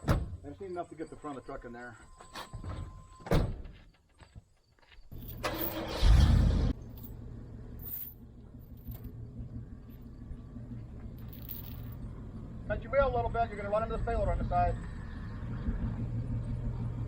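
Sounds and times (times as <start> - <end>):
engine starter cranking: 5.2 - 6.8
truck engine revving and idling: 5.3 - 17.0.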